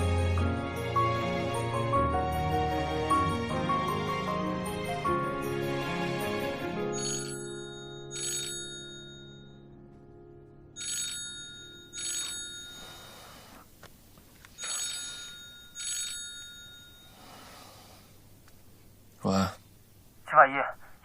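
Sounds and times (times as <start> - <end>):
soft music chord: 0.0 - 8.2, 8.9 - 10.8
phone ringtone chimes: 6.9 - 9.8, 10.8 - 13.2, 14.6 - 17.2.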